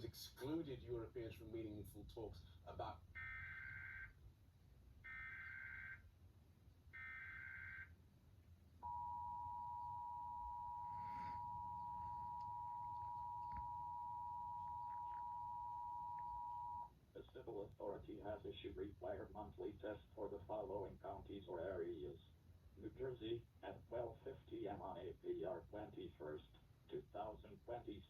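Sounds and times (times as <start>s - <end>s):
steady two-tone attention signal: 8.8s - 16.9s.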